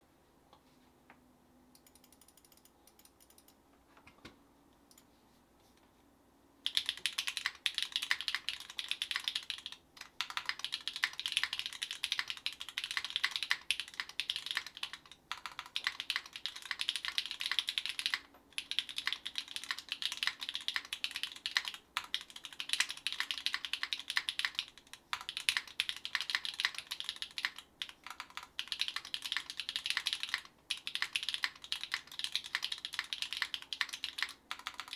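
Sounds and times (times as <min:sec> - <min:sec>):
mechanical keyboard typing: 0:01.8 - 0:03.6, 0:06.6 - 0:34.9.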